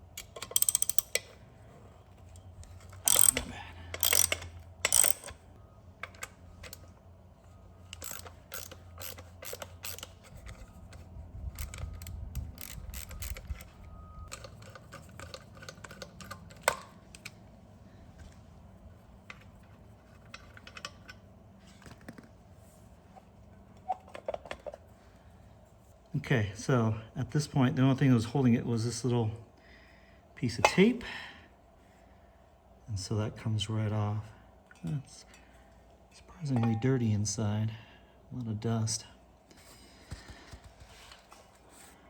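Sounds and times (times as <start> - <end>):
socket ratchet clicking: 0.1 - 1.3, 2.9 - 5.4, 7.9 - 10.6, 11.6 - 17.4
tools clicking and knocking: 0.2 - 1.4, 2.6 - 5.4, 6.0 - 6.8, 7.9 - 11.0, 11.6 - 17.4, 19.3 - 21.2, 23.8 - 24.8, 36.5 - 36.9.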